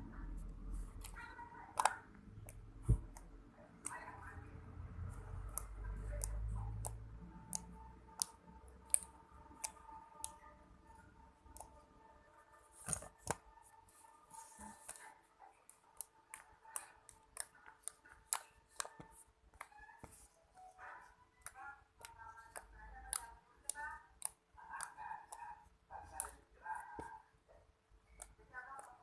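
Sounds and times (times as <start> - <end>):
slime snapping: 1.0 - 4.0, 5.4 - 10.4, 16.0 - 19.8, 21.4 - 25.4.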